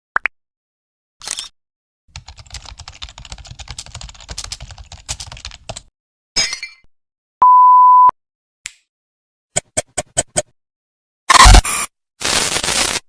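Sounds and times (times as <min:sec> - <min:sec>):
keyboard typing: 0:02.1 - 0:05.9
steady single-pitch beep: 0:07.4 - 0:08.1.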